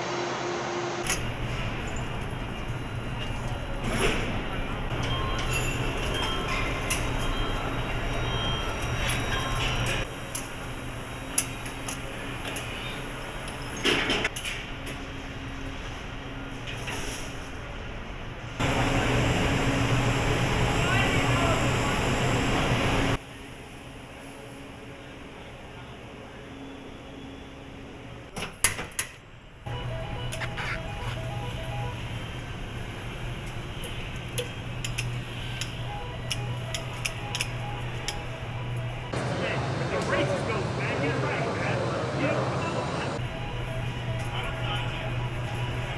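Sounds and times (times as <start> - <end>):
machinery hum: 0.0 - 28.4, 29.4 - 45.9
sharp clicks and ticks: 34.4 - 38.9.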